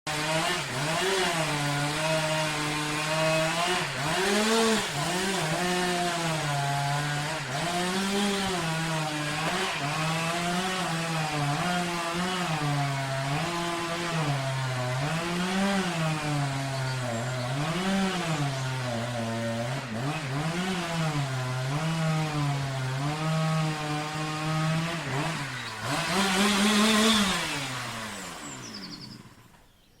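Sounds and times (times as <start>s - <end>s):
chainsaw revving: 0.1s - 29.7s.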